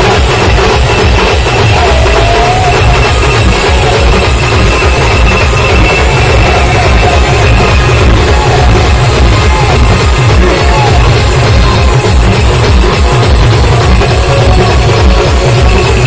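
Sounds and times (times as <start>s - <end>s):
loud music with heavy bass beat: 0.0s - 16.0s.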